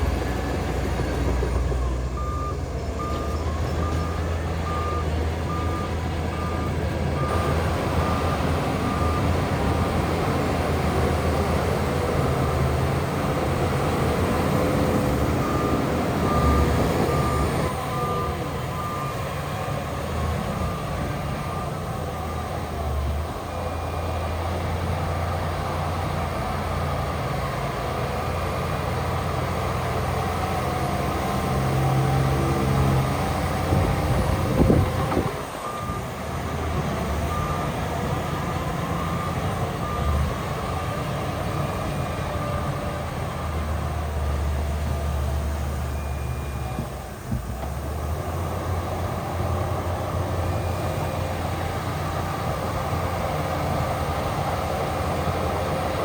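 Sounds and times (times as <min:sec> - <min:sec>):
diesel earthmoving machinery: 0:00.0 - 0:56.0
reversing alarm beeping: 0:01.2 - 0:25.1, 0:29.2 - 0:43.6, 0:45.7 - 0:47.2.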